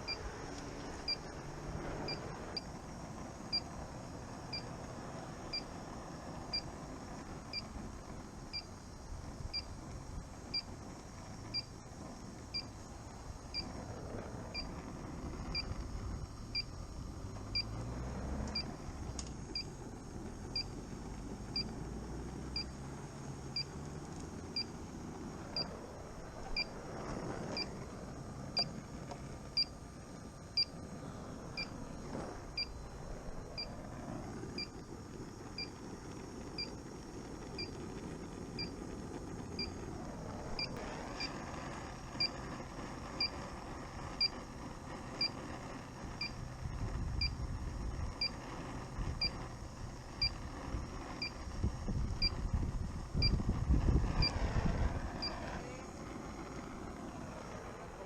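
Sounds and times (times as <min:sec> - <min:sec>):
low rushing noise: 0:00.0 - 0:42.9, 0:48.6 - 0:58.0
gas detector beeping: 0:08.5 - 0:08.8, 0:09.5 - 0:09.7, 0:11.5 - 0:11.8, 0:12.5 - 0:12.7, 0:16.5 - 0:16.7, 0:25.5 - 0:25.7, 0:26.5 - 0:26.8, 0:28.6 - 0:28.8, 0:29.6 - 0:29.8, 0:30.6 - 0:30.8, 0:31.6 - 0:31.8, 0:34.6 - 0:34.8, 0:37.6 - 0:37.8, 0:38.6 - 0:38.8, 0:39.6 - 0:39.8, 0:50.2 - 0:50.4, 0:54.1 - 0:54.4.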